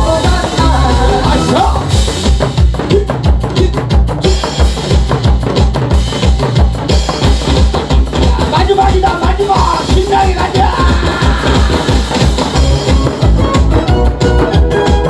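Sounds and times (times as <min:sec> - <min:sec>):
music with fast drum beat: 0:00.0 - 0:15.0.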